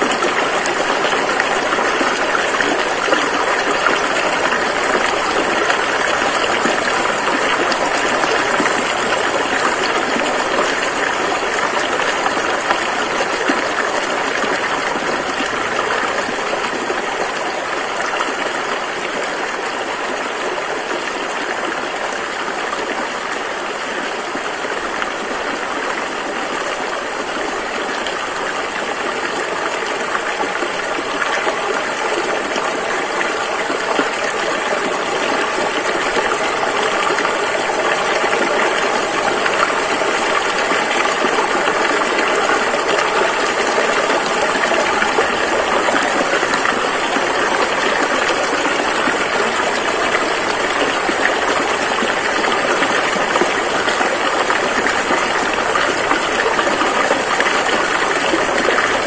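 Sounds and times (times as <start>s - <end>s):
river water rushing over rapids: 0.0s - 59.0s.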